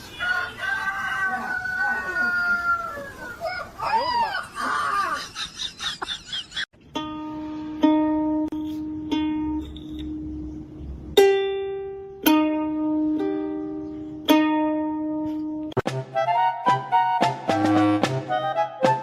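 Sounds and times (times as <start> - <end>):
plucked string instrument notes: 6.8 - 19.0.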